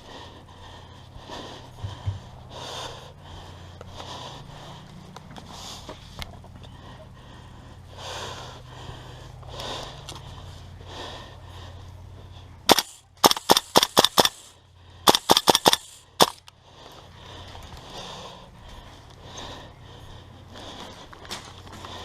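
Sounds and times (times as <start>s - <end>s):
airsoft guns firing: 12.7s - 14.5s, 15.1s - 16.4s.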